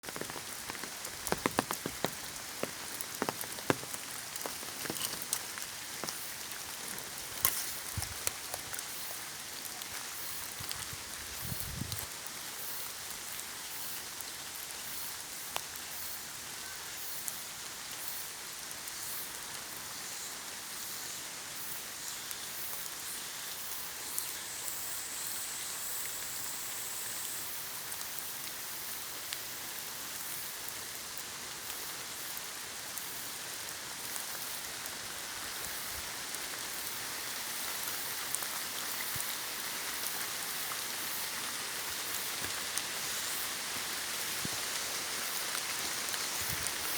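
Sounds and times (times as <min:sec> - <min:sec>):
raindrops ticking: 0:00.0 - 0:11.3
rain falling in forest: 0:00.0 - 0:46.9.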